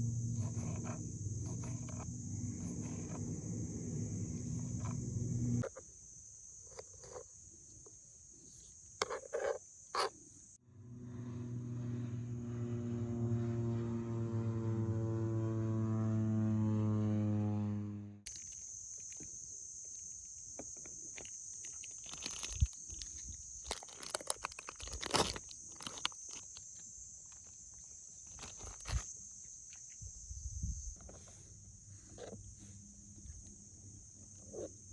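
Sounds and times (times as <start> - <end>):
low-flying plane engine droning: 0.0 - 5.6, 10.6 - 18.2
insects chirring: 0.0 - 15.8, 18.3 - 34.9.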